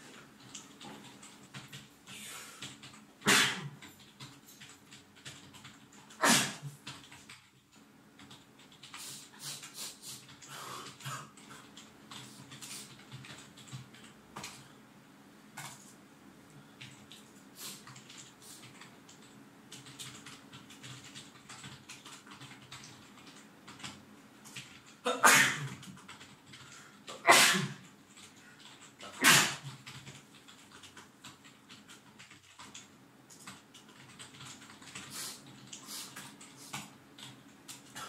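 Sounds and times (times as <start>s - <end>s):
person sneezing: 3.2s - 3.7s, 6.2s - 6.7s, 25.1s - 25.7s, 27.1s - 27.8s, 29.1s - 29.7s
keyboard typing clicks: 16.8s - 25.0s, 28.1s - 38.0s.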